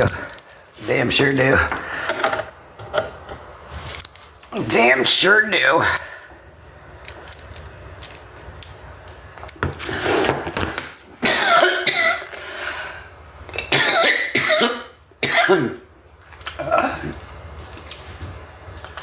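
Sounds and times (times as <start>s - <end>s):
woman coughing: 11.2s - 12.3s, 13.6s - 15.8s.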